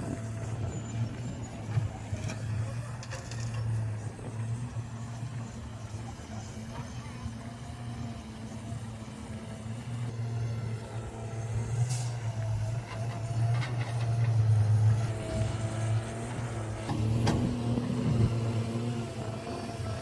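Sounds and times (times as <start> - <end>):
diesel engine humming: 0.0 - 20.0.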